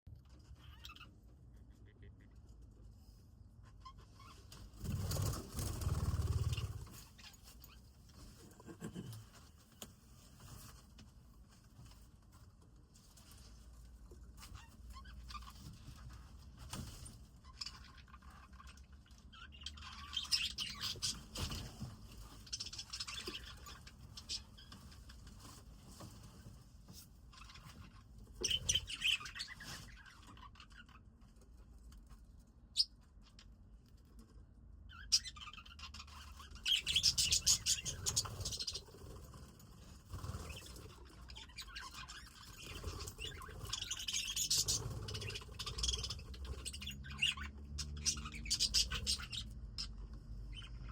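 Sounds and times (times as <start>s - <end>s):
budgies chirping: 17.4s - 24.7s, 27.4s - 31.0s, 34.9s - 39.2s, 40.1s - 50.9s.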